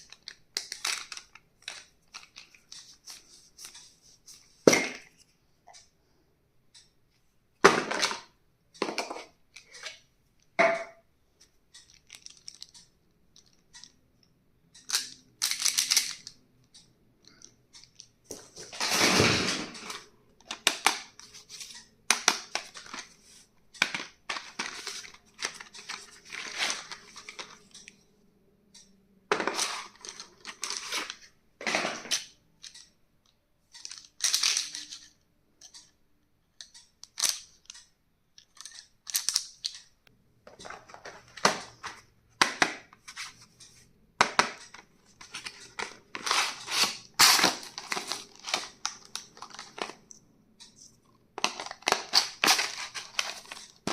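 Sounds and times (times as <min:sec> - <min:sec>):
packaging crinkling and rustling: 0:45.2 - 0:50.0, 0:51.4 - 0:53.9
packaging tearing: 0:46.2 - 0:48.7.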